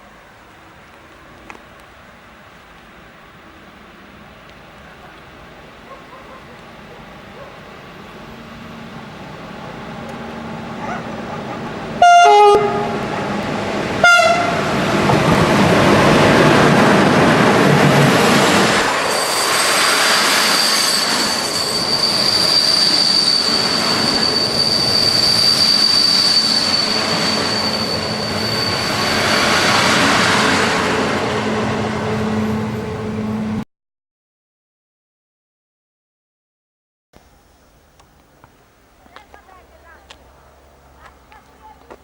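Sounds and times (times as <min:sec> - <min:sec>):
train passing: 0:00.0 - 0:33.6, 0:38.9 - 0:42.0
train horn blasts: 0:12.0 - 0:13.4, 0:14.0 - 0:15.0
high-pitched wheel squeal: 0:19.0 - 0:30.5.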